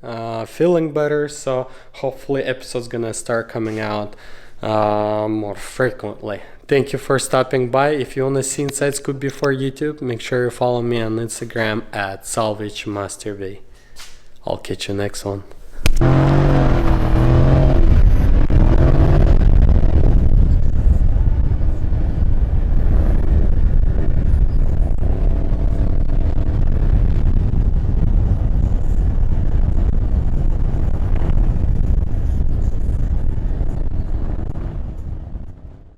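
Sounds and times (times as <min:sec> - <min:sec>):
motor vehicle engine rumbling: 0:15.8 - 0:35.9.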